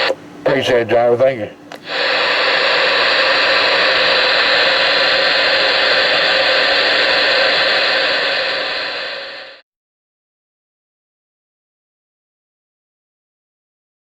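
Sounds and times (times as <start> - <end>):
radio static hiss: 0.0 - 9.6.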